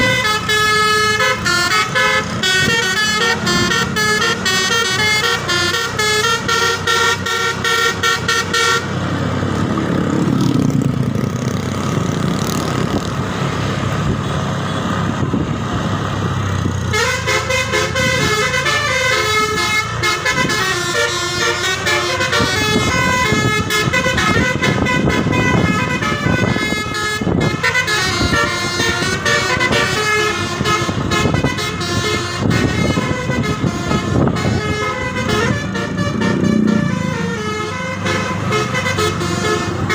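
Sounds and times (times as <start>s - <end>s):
bus horns playing a tune: 0.0s - 10.3s, 16.7s - 39.9s
low engine rumble: 8.9s - 39.9s.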